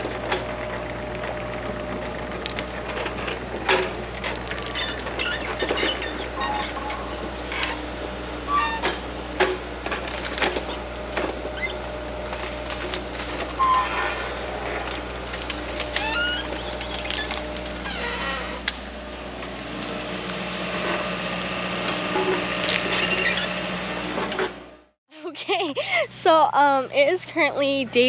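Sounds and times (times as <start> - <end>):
heavy equipment engine running: 0.0 - 28.0
wood cracking and snapping: 2.3 - 7.8, 9.4 - 19.5
short high squeaks: 4.6 - 7.8, 11.6 - 11.8, 13.5 - 14.4, 22.1 - 23.6.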